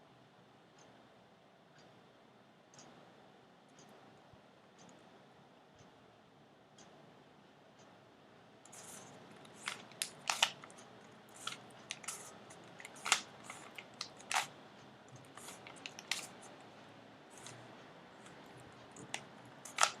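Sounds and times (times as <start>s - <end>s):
puzzle cube layers clicking: 8.7s - 14.5s.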